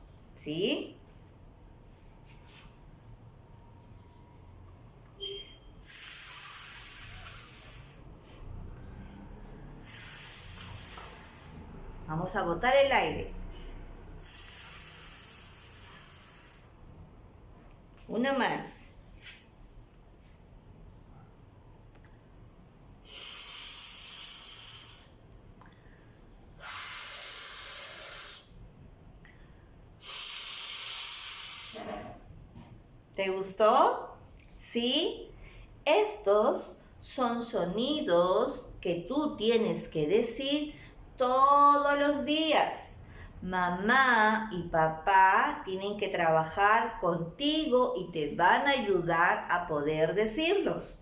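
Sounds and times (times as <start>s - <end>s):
woman making hissing sounds: 5.8s - 8.2s, 9.8s - 11.8s, 14.2s - 16.8s, 23.0s - 25.2s, 26.6s - 28.6s, 30.0s - 32.2s
person blowing air out: 5.8s - 8.6s, 9.8s - 11.8s, 14.2s - 16.8s, 23.0s - 25.2s, 26.5s - 28.6s, 30.0s - 32.2s.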